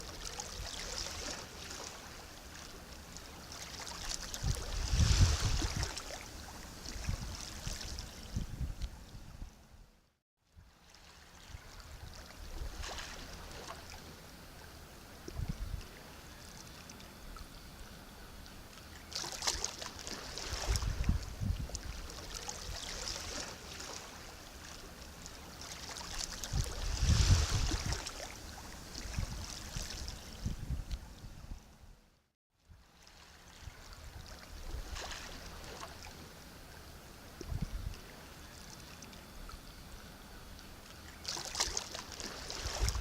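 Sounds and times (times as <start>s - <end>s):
sea waves breaking: 0.0s - 8.1s, 10.8s - 14.0s, 19.1s - 30.2s, 33.0s - 36.2s, 41.0s - 43.0s.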